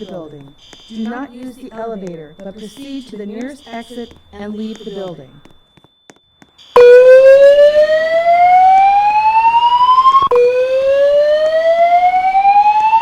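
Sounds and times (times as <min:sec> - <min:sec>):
rising whoop evacuation tone: 0:06.8 - 0:13.0.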